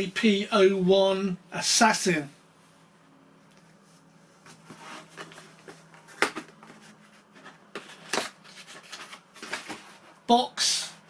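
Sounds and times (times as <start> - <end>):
cardboard box rustling: 4.5 - 10.0.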